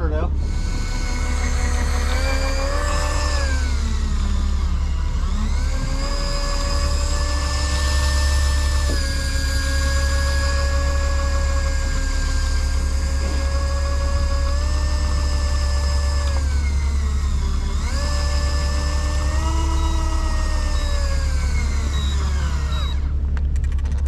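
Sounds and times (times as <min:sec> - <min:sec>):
low engine hum: 0:00.0 - 0:24.0
motor whine: 0:00.0 - 0:24.0.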